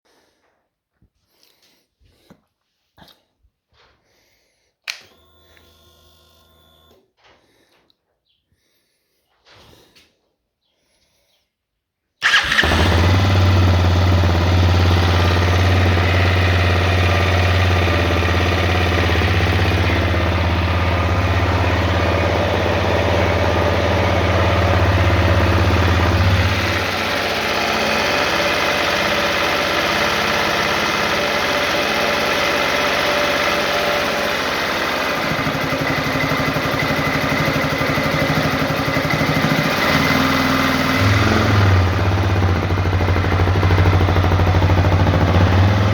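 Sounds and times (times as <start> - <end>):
engine knock: 12.2 - 45.9
motorcycle engine idling: 12.2 - 45.9.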